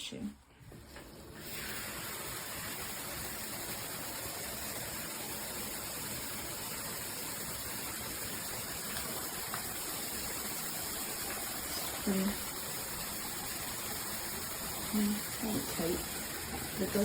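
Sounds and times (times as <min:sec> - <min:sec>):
shower water spraying: 0:00.8 - 0:17.0.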